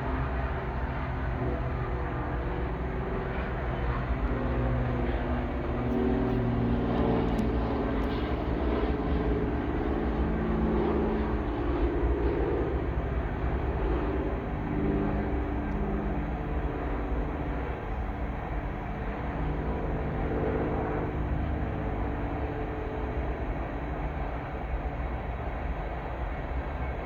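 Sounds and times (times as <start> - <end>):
diesel locomotive engine drone: 0.0 - 27.0.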